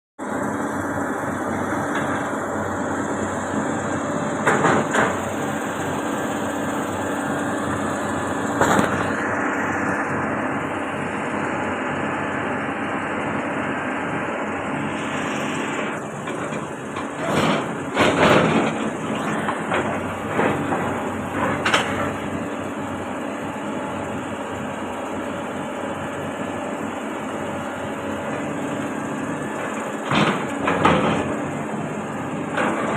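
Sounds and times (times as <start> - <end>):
excavator diesel engine running: 0.2 - 32.9
loud knocks and clanks: 4.4 - 5.4, 8.5 - 9.2, 16.0 - 22.2, 30.0 - 31.4.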